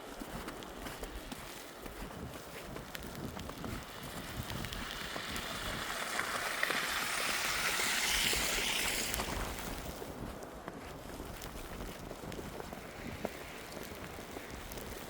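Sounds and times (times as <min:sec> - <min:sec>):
footsteps crunching in snow: 0:00.0 - 0:15.0
vehicle tyre hiss passing: 0:03.8 - 0:10.2, 0:12.7 - 0:15.0.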